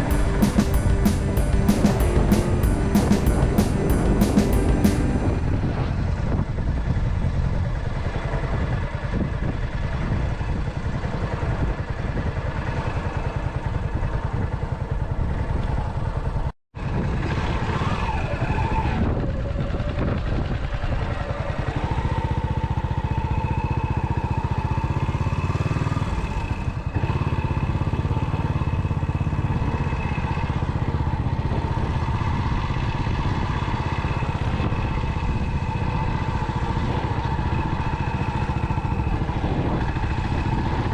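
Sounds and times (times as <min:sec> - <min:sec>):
motorcycle engine thumping: 0:00.0 - 0:05.4.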